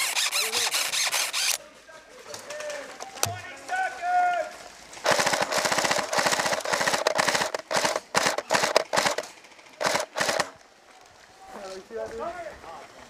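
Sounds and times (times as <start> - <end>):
rapid-fire game gun bursts: 5.0 - 10.6.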